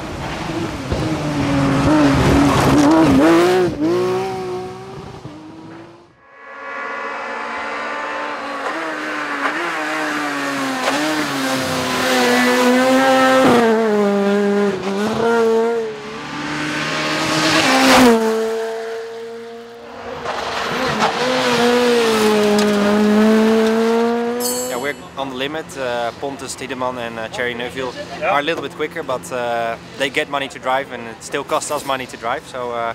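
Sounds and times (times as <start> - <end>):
rally car engine revving: 0.0 - 6.1, 7.9 - 24.4.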